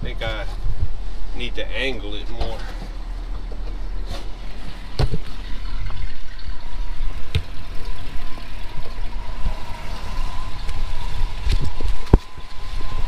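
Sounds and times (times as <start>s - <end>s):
thin high whine: 0.0s - 13.0s.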